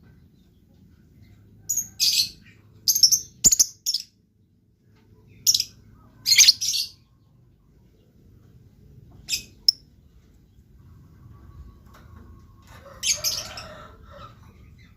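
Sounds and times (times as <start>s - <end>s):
lovebird chirping: 1.7s - 4.1s, 5.4s - 7.0s, 9.3s - 9.9s.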